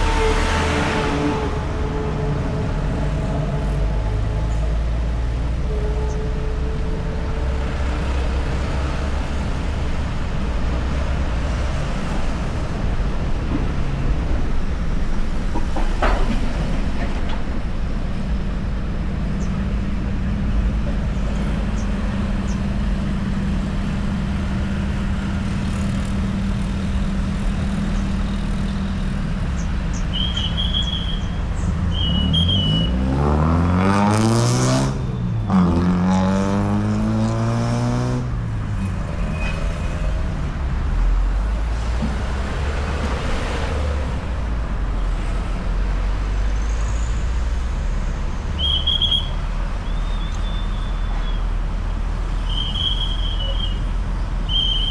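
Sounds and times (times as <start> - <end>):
traffic rumble: 0.0 - 54.9
vehicle passing with whoosh: 31.6 - 48.6.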